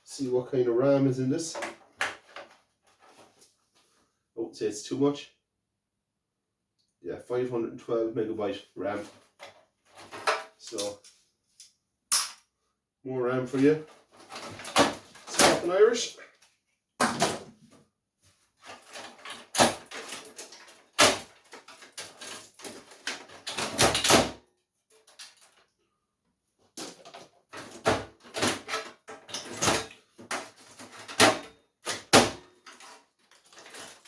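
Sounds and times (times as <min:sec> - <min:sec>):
metal and plastic parts clattering: 0:01.4 - 0:03.5, 0:09.0 - 0:12.4, 0:13.6 - 0:15.8, 0:18.6 - 0:24.3, 0:24.9 - 0:25.7, 0:26.8 - 0:34.0.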